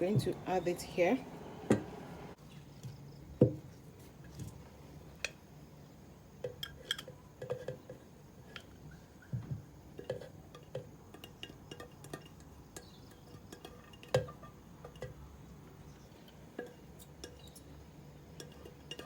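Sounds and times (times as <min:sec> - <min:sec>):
kitchen utensils clinking: 0:18.3 - 0:19.0.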